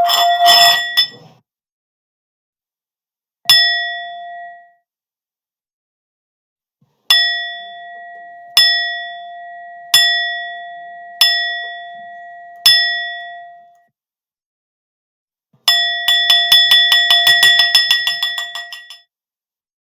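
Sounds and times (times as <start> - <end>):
bell ringing: 0.0 - 1.2.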